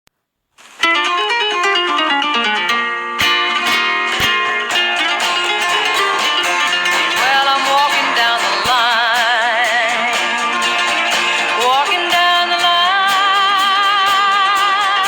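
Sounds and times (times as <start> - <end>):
acoustic guitar: 0.6 - 15.0
person singing: 3.2 - 15.0.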